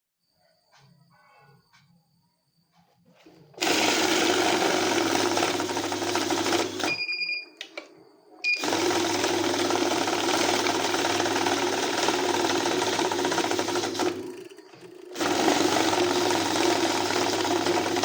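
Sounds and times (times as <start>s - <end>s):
banknote counting machine whirring: 3.6s - 7.0s, 8.6s - 18.0s
short high beeps: 6.9s - 7.6s.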